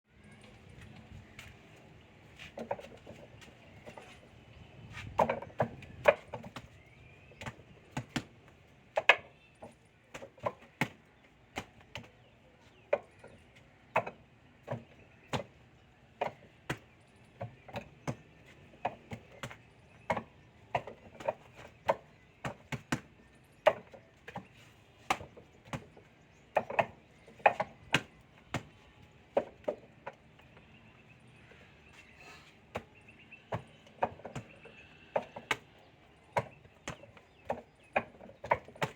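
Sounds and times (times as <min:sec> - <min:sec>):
sharp wooden knocks: 0:05.2 - 0:06.7, 0:16.2 - 0:28.8, 0:33.5 - 0:38.9.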